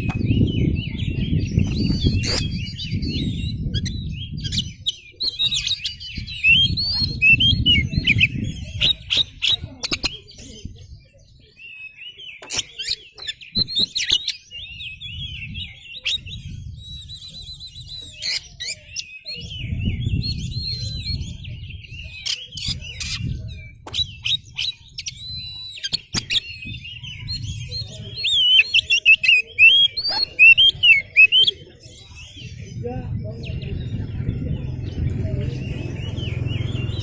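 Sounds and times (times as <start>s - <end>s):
songbird singing whistles and trills: 0.0s - 37.0s
low rumble: 33.2s - 37.0s.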